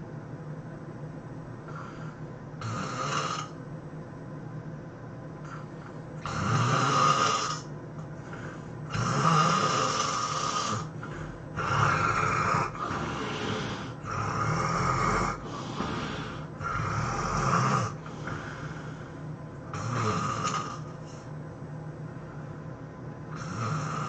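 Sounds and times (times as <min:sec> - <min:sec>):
quiet breathing: 0:01.6 - 0:03.6, 0:05.4 - 0:24.0
person snoring: 0:01.7 - 0:03.6, 0:05.4 - 0:07.7, 0:08.3 - 0:21.3, 0:23.3 - 0:24.0.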